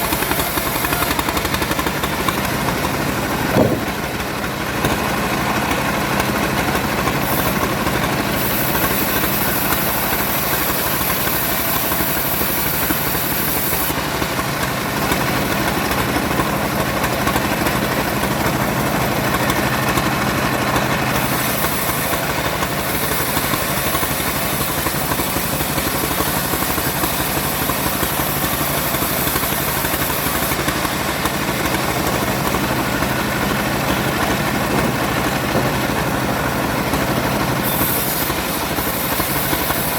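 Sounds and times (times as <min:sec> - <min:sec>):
engine-driven wood saw running: 0:00.0 - 0:39.9
saw cutting hiss: 0:21.2 - 0:39.9.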